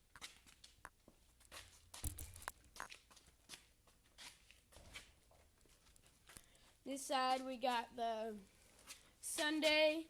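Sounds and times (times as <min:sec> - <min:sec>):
bike clicks and rattles: 0:02.0 - 0:02.9.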